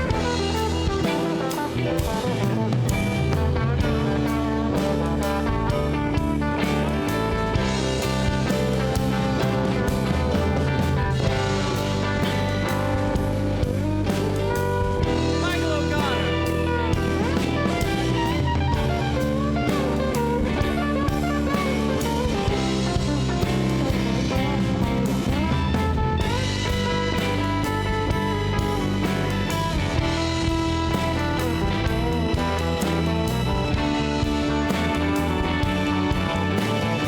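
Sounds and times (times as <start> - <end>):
electric guitar solo: 0.0 - 37.0
rock band playing: 0.0 - 37.0.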